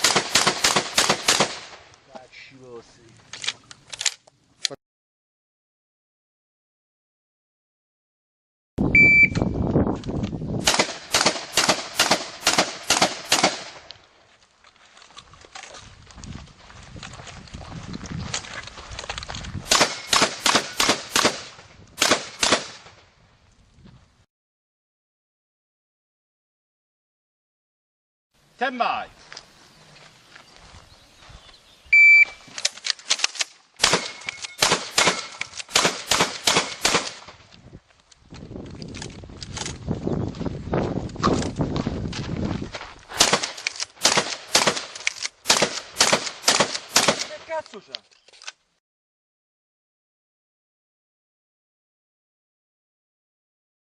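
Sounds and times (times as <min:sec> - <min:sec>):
rapid shotgun shots: 0:00.0 - 0:01.8, 0:10.6 - 0:13.8, 0:19.7 - 0:22.9, 0:33.8 - 0:37.4, 0:43.1 - 0:47.5
shot timer beep: 0:08.9 - 0:09.6, 0:32.0 - 0:32.4.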